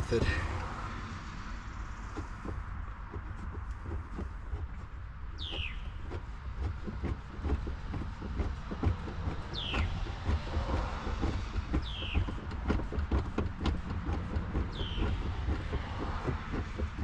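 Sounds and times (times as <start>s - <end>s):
steady low rumble: 0.0s - 17.0s.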